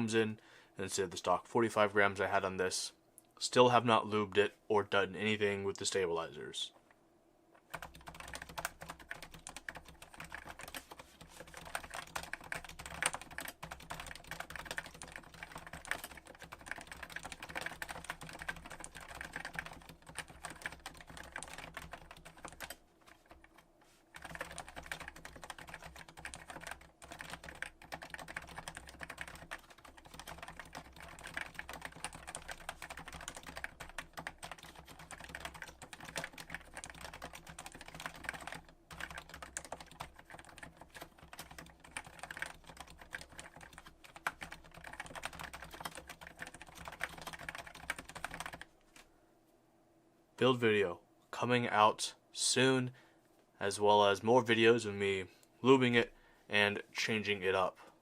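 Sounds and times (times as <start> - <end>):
fast keyboard typing: 7.7 - 48.7.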